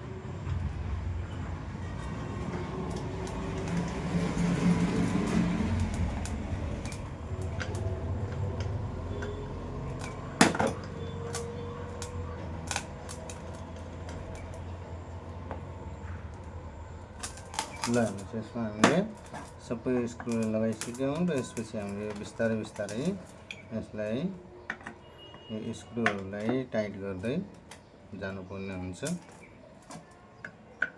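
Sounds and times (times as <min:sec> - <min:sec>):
metal parts rubbing and rattling: 0:02.0 - 0:08.5, 0:20.2 - 0:23.5.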